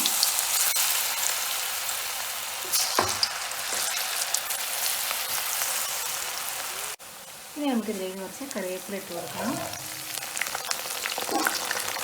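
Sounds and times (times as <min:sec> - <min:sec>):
batter sizzling in hot oil: 0:00.0 - 0:12.0.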